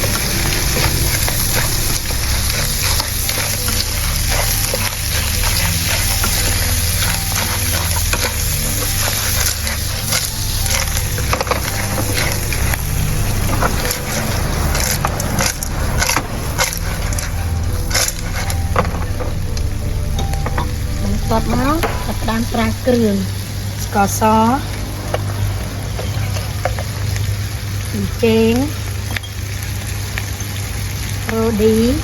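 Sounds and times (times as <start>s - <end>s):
clattering from stirring: 0.0s - 12.8s
oysters sizzling in a pan: 0.0s - 32.0s.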